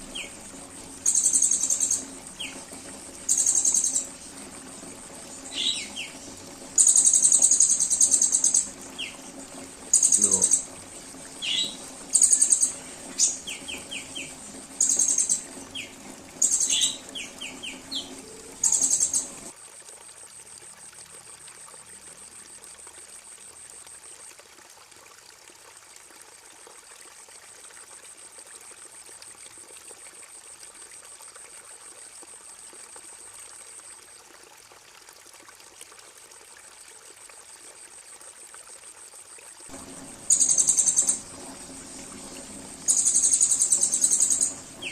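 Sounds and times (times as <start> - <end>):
songbird chirps: 0.0 - 19.5, 39.7 - 44.9
songbird trilling: 1.0 - 4.4, 5.3 - 19.5, 39.9 - 44.9
high-pitched pulsing buzz: 39.7 - 44.9.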